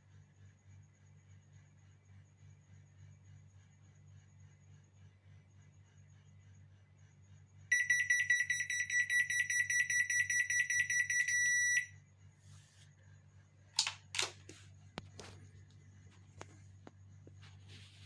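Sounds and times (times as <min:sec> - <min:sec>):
sharp clicks: 0:13.8 - 0:14.4.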